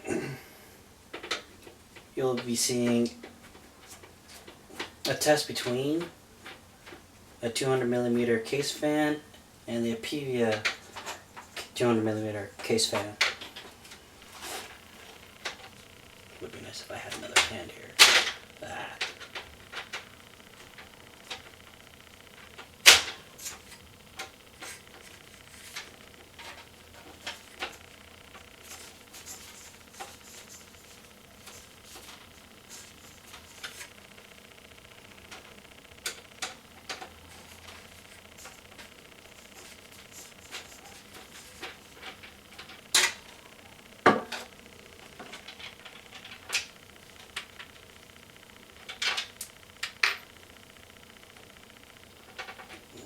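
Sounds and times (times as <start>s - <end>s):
plastic fan and screws clicking: 12.9s - 53.0s.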